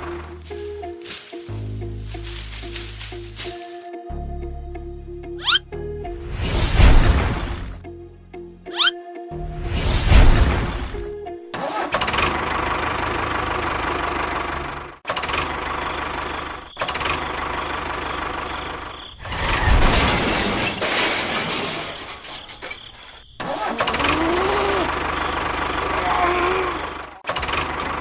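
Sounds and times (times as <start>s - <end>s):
background music: 0.0s - 11.8s
small engine running: 11.6s - 18.9s.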